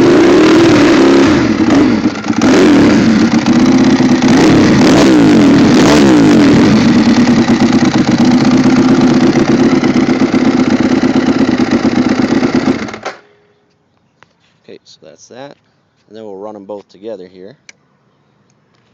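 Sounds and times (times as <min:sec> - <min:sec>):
motorcycle engine blipping and idling: 0:01.5 - 0:13.2.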